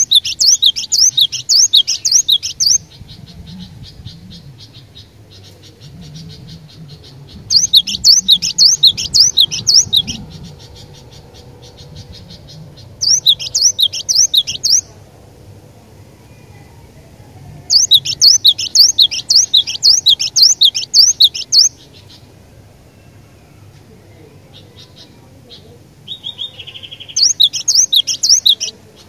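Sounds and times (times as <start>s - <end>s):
bird fast chatter: 0.0s - 14.9s, 17.7s - 22.2s, 26.2s - 29.0s
bird high chirps: 0.0s - 15.0s, 17.7s - 22.4s, 24.5s - 29.0s.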